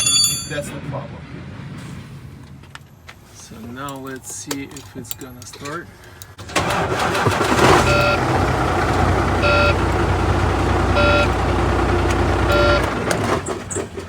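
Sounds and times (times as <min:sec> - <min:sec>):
diesel truck engine rumbling: 0:06.4 - 0:14.0
warning beep: 0:07.8 - 0:08.4, 0:09.4 - 0:13.0.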